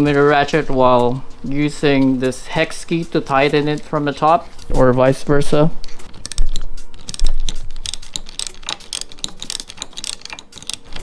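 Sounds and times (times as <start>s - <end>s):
socket ratchet clicking: 2.3s - 4.8s, 5.8s - 11.0s.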